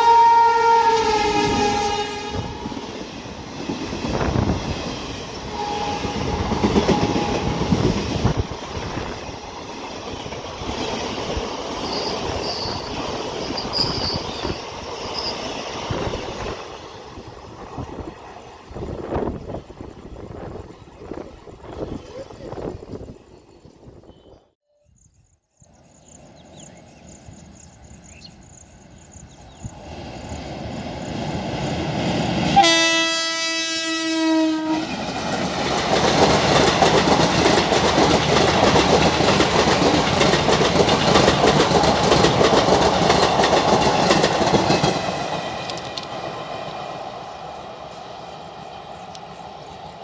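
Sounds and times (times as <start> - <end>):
locomotive horn blast: 0.0 - 2.7, 5.5 - 7.6, 32.5 - 35.0
passenger train passing: 0.0 - 24.6, 25.7 - 50.0
wheels clicking over rail joints: 34.9 - 46.7.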